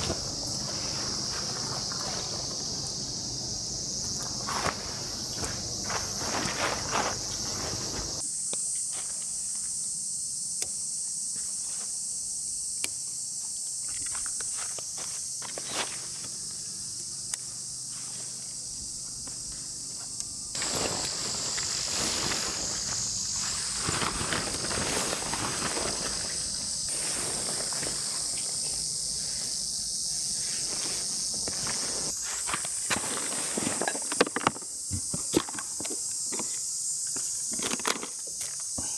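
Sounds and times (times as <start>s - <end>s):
crunching footsteps: 0.0s - 8.2s, 13.8s - 16.4s, 17.4s - 38.9s
rustling: 0.0s - 8.2s, 18.0s - 34.4s
insects chirring: 0.0s - 38.9s.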